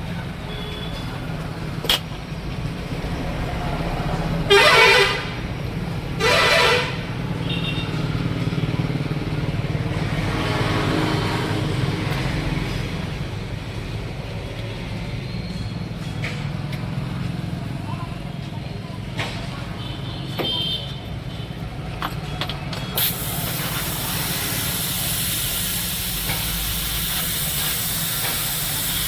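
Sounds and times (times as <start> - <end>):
engine and traffic rumble: 0.0 - 29.0
vehicle horn honking: 0.5 - 1.1, 4.5 - 5.5, 6.1 - 8.1, 19.8 - 21.0.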